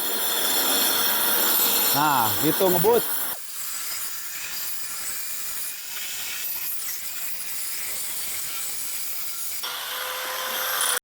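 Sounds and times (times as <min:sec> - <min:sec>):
small circular saw running: 0:00.0 - 0:11.0.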